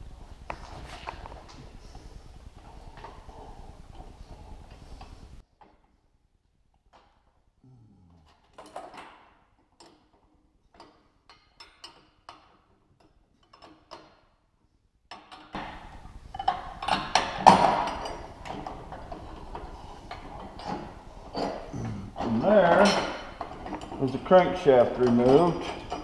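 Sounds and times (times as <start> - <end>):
metal parts clattering: 16.4 - 26.0.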